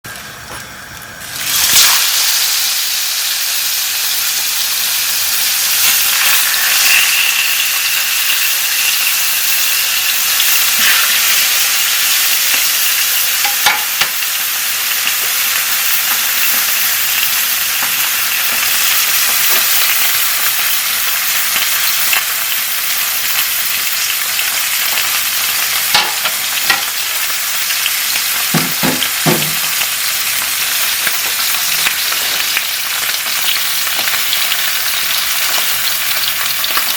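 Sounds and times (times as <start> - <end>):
fish sizzling in oil: 0.1 - 36.9
sharp knocks: 28.6 - 29.7.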